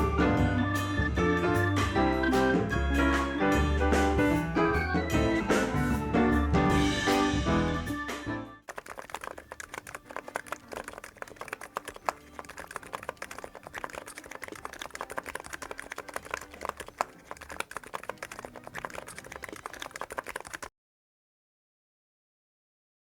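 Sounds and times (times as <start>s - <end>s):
keyboard typing: 8.7s - 20.7s.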